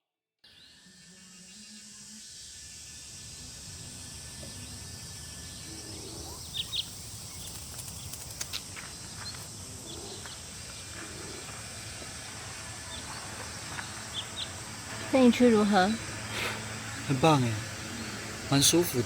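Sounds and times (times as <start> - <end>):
insects droning: 0.5 - 19.0
bird chirps: 4.0 - 10.4.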